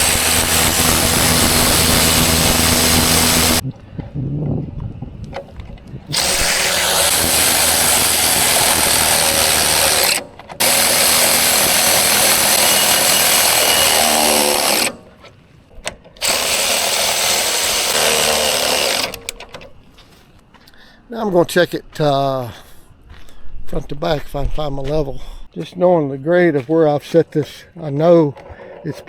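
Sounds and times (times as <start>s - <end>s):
power drill running: 0.0s - 3.6s, 6.1s - 15.2s, 16.2s - 19.7s.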